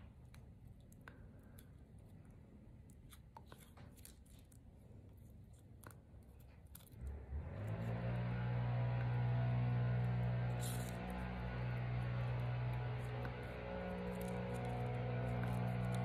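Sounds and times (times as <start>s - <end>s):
paper and tape crinkling: 2.8s - 7.0s, 10.5s - 11.3s, 13.0s - 16.0s
music with low sustained notes: 7.0s - 16.0s.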